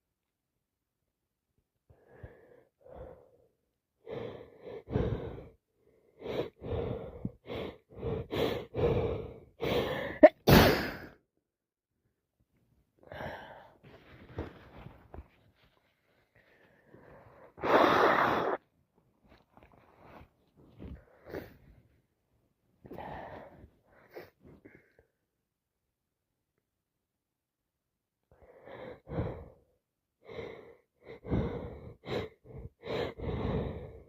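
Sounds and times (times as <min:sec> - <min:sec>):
person breathing in short breaths: 0:01.9 - 0:10.3, 0:28.4 - 0:34.0
loud wet sneeze: 0:10.2 - 0:11.0, 0:17.6 - 0:18.6.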